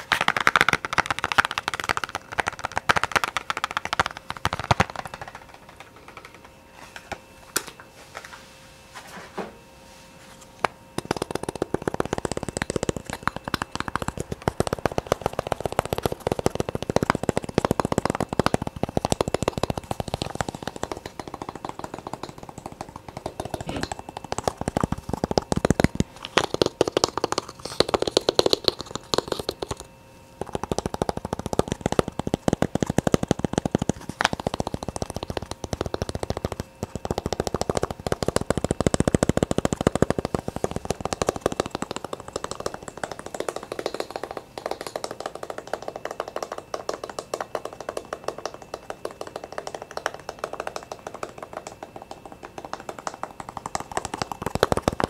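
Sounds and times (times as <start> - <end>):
rapid light tapping: 0.0 - 6.6, 11.0 - 55.0.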